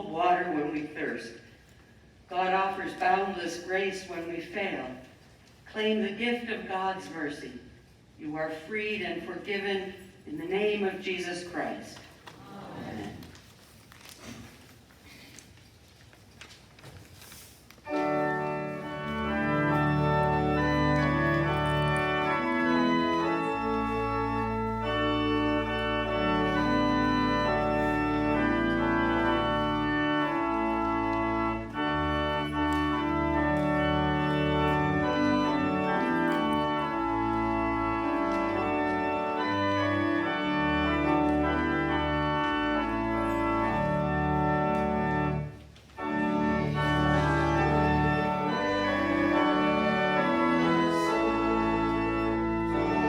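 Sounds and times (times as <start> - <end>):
church organ playing a hymn: 0.0 - 1.5, 2.3 - 5.1, 10.4 - 11.9, 17.8 - 53.0.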